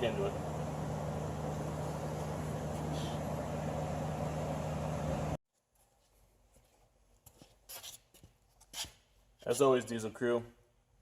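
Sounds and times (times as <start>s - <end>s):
machine engine humming: 0.0s - 5.4s.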